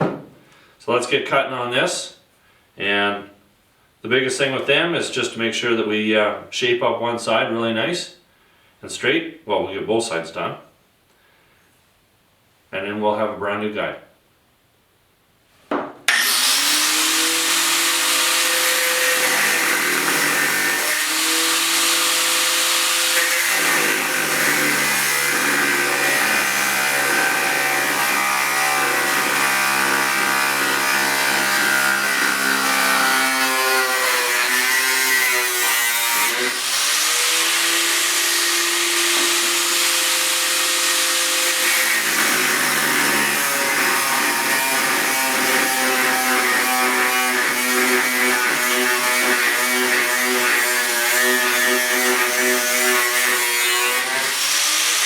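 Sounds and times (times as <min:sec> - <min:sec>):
grinder grinding steel: 0:16.1 - 0:55.0.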